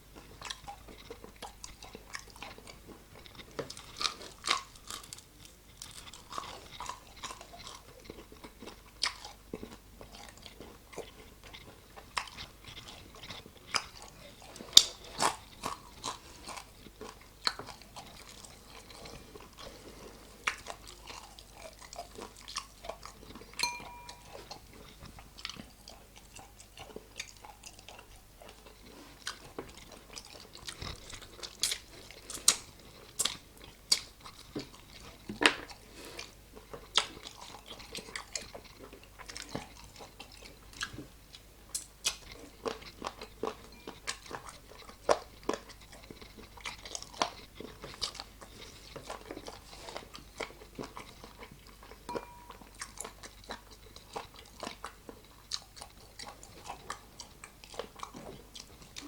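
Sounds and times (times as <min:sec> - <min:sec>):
crunchy bites and wet chewing: 0:00.2 - 0:23.7.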